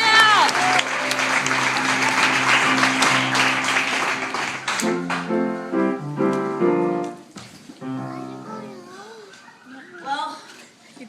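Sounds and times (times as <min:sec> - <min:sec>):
audience applause: 0:00.0 - 0:05.8
piano chords: 0:00.0 - 0:09.0.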